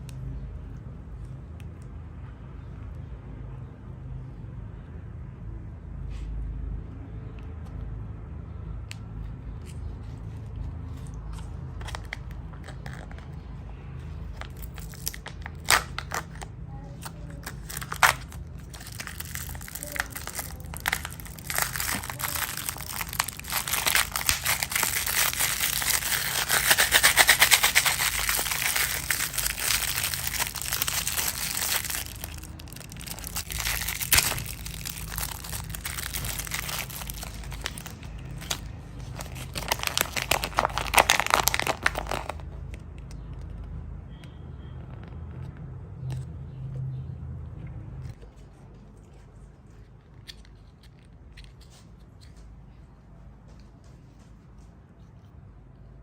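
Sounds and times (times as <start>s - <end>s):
wrapper crinkling and tearing: 11.1s - 13.4s, 14.2s - 42.8s.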